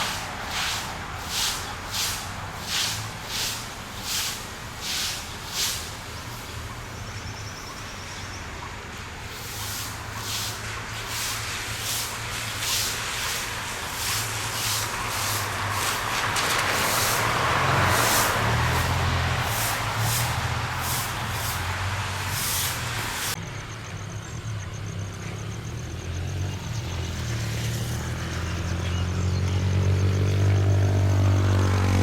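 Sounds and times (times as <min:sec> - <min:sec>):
regular hiss: 0:00.0 - 0:06.9, 0:09.2 - 0:23.4
diesel train rumble: 0:00.0 - 0:32.0.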